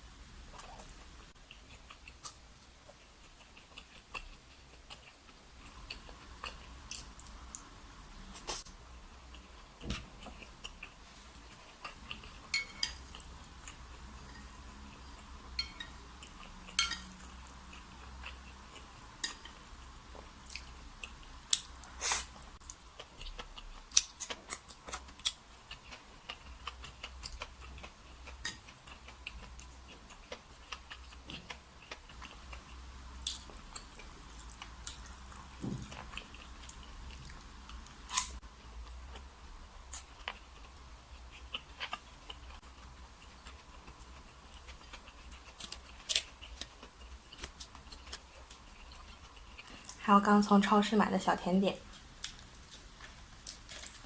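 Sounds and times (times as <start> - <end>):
person chewing: 0.5 - 50.0, 51.8 - 54.0
chopsticks clicking on dishes: 12.1 - 13.3, 15.5 - 17.4.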